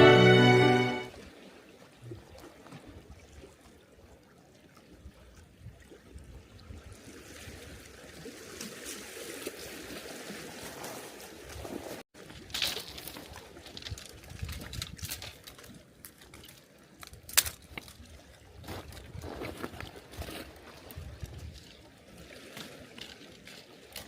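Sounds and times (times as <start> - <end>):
faint trickling water: 12.2 - 24.0.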